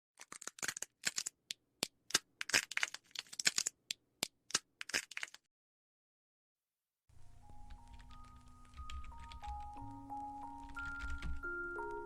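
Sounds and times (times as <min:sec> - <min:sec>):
birds pecking at lard: 0:07.4 - 0:12.0.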